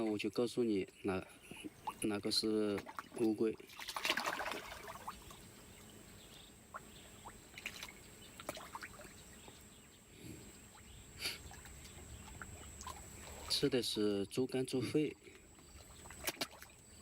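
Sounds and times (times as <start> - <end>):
faint pond water trickling: 0.0 - 17.0.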